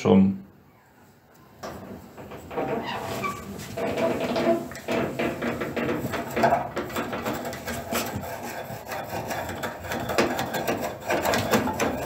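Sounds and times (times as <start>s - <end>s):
pencil scratching on metal hinges: 2.6s - 12.0s.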